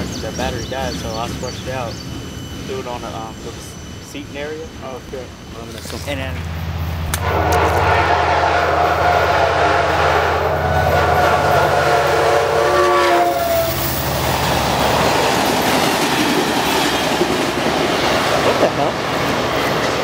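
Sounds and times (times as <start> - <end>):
low engine drone: 0.0 - 12.8
train wheels rumbling on rails: 0.0 - 20.0
locomotive horn chord: 7.0 - 13.8.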